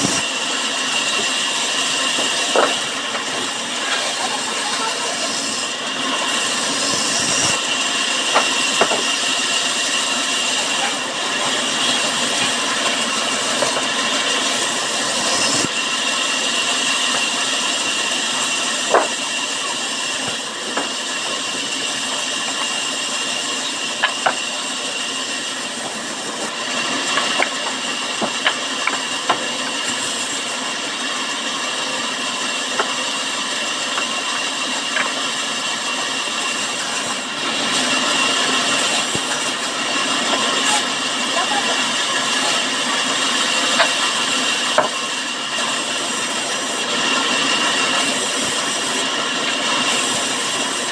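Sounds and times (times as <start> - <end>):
sawmill saw cutting wood: 0.0 - 50.9
knocks of timber handled: 2.2 - 3.3, 8.3 - 9.1, 18.9 - 19.2, 44.8 - 45.0.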